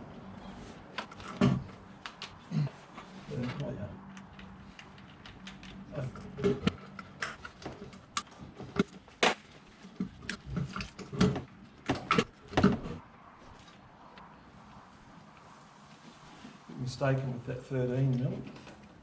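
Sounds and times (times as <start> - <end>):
clicks and knocks of tools: 0.9 - 13.0.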